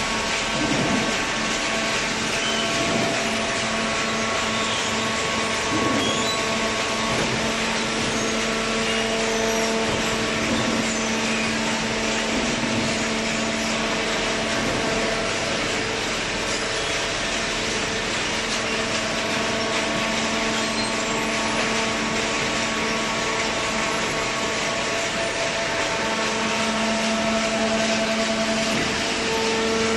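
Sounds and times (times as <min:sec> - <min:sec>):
baling machine humming: 0:00.0 - 0:29.9.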